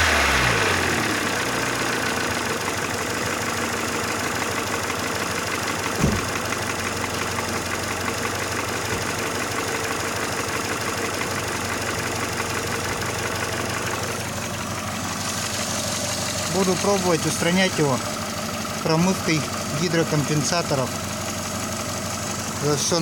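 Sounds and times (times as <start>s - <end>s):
car engine idling with ticking: 0.0s - 23.0s
low thump: 6.0s - 6.5s.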